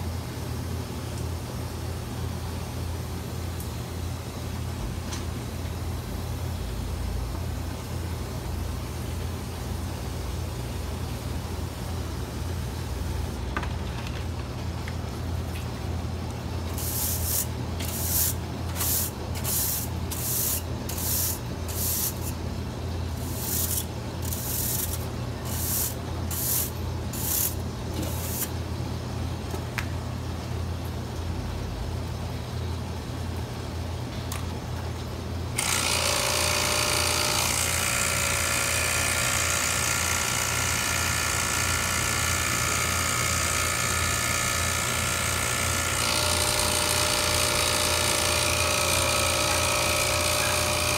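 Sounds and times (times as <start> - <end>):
steady low hum: 0.0 - 35.6
hissing spray bursts: 16.7 - 22.3, 23.2 - 28.5
cleaning tool motor whine: 35.6 - 50.9.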